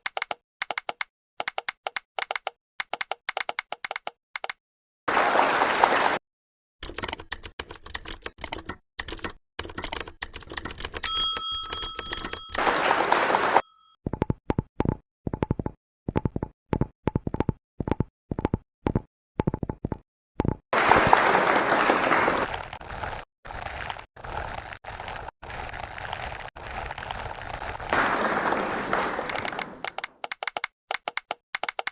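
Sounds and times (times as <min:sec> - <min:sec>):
rapid irregular clicks: 0:06.8 - 0:11.0, 0:29.3 - 0:31.9
bell-like ding: 0:11.0 - 0:12.6.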